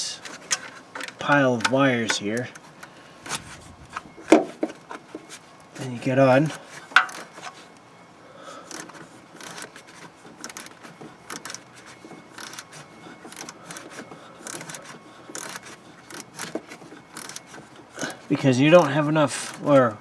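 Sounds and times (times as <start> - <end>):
socket ratchet clicking: 6.9 - 7.6, 8.7 - 19.7.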